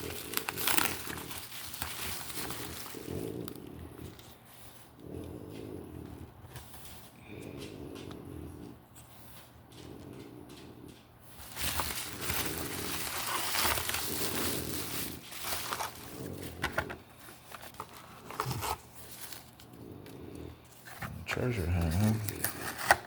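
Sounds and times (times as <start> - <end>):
packaging rustling and crinkling: 0.0 - 4.8, 11.3 - 23.0.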